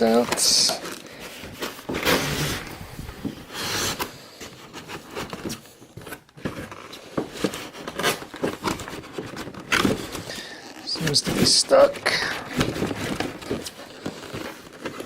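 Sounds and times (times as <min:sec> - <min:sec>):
cardboard box being handled: 0:00.0 - 0:15.0
cardboard scraping: 0:00.0 - 0:15.0.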